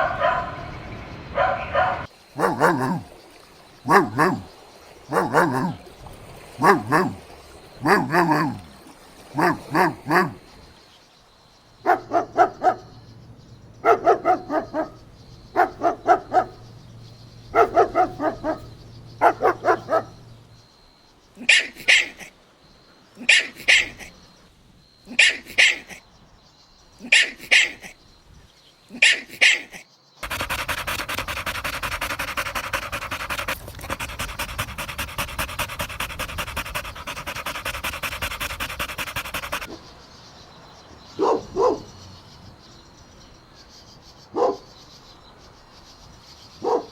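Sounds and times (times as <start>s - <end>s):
dog barking: 0.0s - 0.7s, 1.4s - 3.2s, 3.8s - 5.9s, 6.5s - 10.6s, 11.8s - 13.0s, 13.8s - 20.5s, 29.0s - 39.8s, 41.2s - 41.9s, 44.3s - 44.7s, 46.6s - 46.9s
dog yelping: 1.4s - 3.1s, 3.9s - 4.5s, 5.1s - 5.8s, 6.6s - 7.2s, 7.8s - 8.7s, 9.4s - 10.5s, 13.8s - 15.0s, 17.5s - 20.4s, 30.2s - 39.7s
dog panting: 2.4s - 3.2s, 3.9s - 4.5s, 5.1s - 7.2s, 7.8s - 10.7s, 13.8s - 20.5s, 30.2s - 39.8s.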